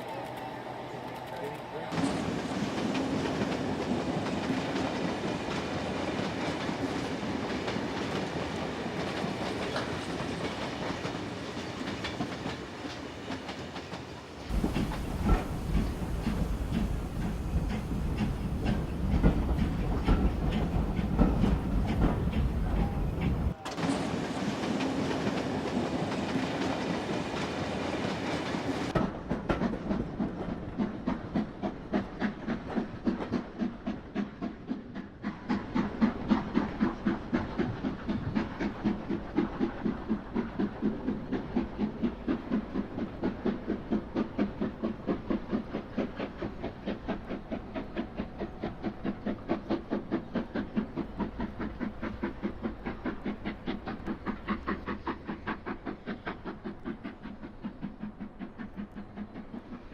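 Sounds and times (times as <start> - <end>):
steam locomotive chuffing: 0.0 - 59.9
steam hiss: 1.9 - 29.0, 30.8 - 59.9.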